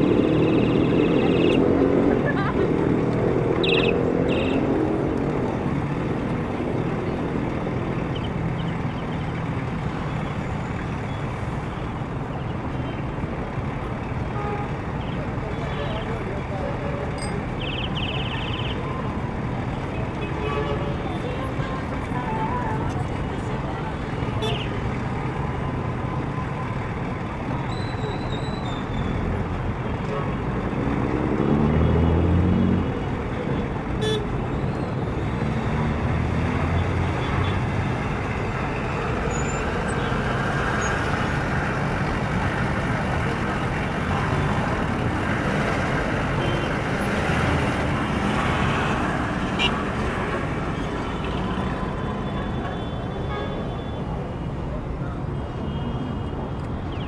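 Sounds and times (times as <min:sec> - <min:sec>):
passing cars and buses: 0:00.0 - 0:57.0
close vehicle engine pulling away: 0:30.7 - 0:33.3.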